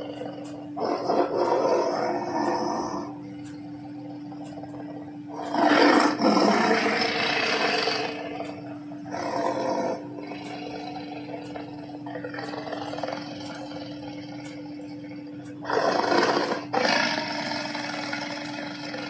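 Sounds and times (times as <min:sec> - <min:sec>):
low hum: 0:00.0 - 0:19.0
dragon roar: 0:00.8 - 0:03.1, 0:05.3 - 0:08.5, 0:09.1 - 0:14.4, 0:15.6 - 0:19.0.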